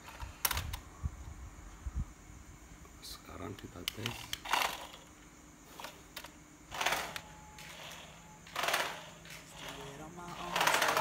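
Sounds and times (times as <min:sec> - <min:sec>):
toy electric motor whirring: 0:04.0 - 0:11.0.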